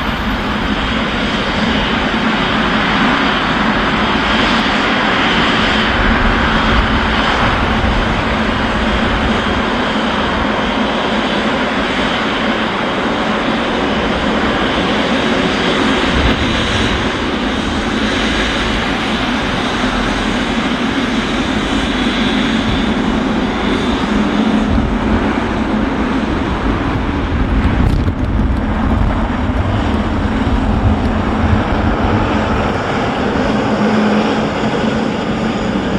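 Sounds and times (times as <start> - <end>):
jet engines running: 0.0 - 35.9
low hum: 15.5 - 35.9.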